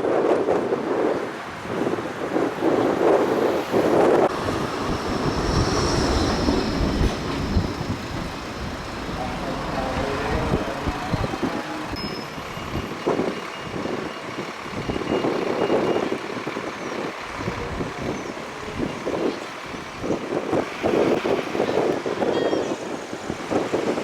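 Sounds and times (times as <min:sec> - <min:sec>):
street vehicle rumble: 0:00.0 - 0:24.0.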